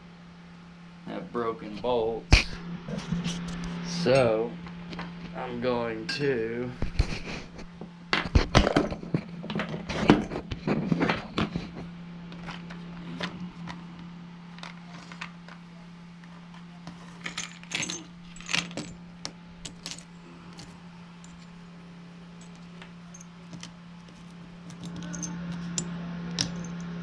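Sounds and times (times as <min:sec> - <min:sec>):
steady low hum: 0:00.0 - 0:27.0
metal tools clinking and rattling: 0:04.0 - 0:04.4, 0:17.1 - 0:19.0, 0:19.6 - 0:21.6, 0:22.4 - 0:26.8.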